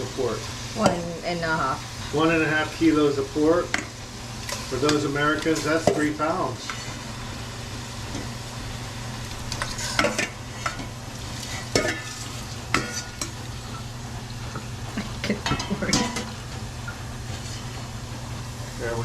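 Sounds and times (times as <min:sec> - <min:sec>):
food sizzling in a pan: 0:00.0 - 0:19.0
utensil scraping a pan: 0:04.5 - 0:07.0, 0:09.5 - 0:13.4, 0:17.3 - 0:17.9.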